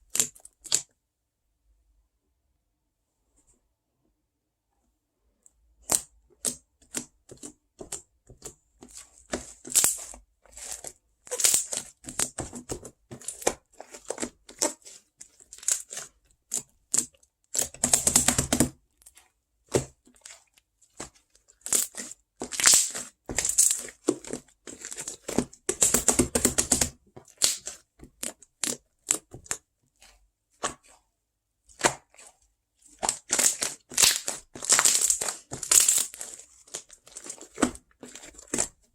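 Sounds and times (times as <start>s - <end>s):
crinkling and tearing: 9.6s - 12.0s, 21.6s - 26.4s, 27.3s - 29.6s, 32.9s - 38.9s.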